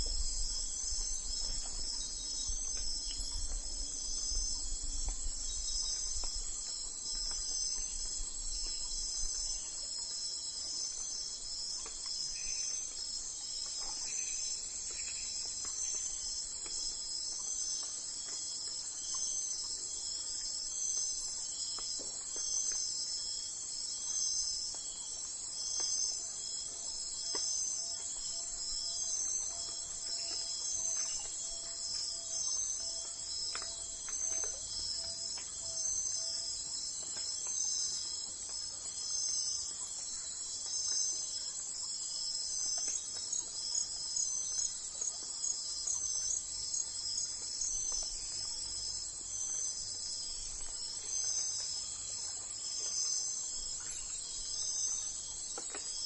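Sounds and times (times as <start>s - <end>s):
crickets chirping: 0.0s - 56.0s.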